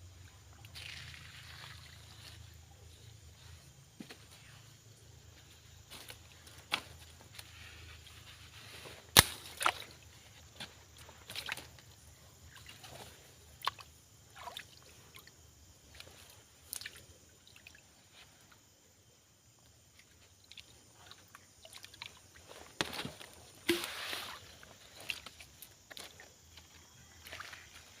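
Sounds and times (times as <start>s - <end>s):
small water splashes: 12.4s - 17.8s, 23.6s - 26.3s, 27.2s - 28.0s.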